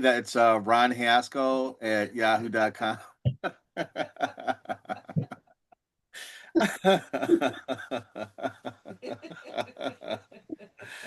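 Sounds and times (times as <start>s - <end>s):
person laughing: 3.4s - 5.4s, 6.6s - 11.0s.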